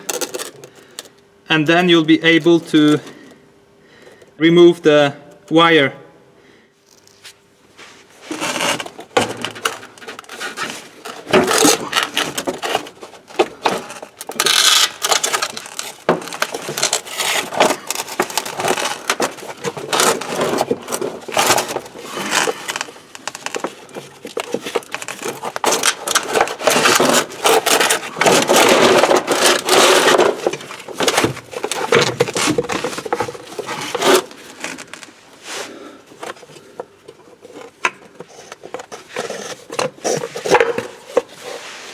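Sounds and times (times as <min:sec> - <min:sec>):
scraping and clicking of winch: 0:08.3 - 0:35.1.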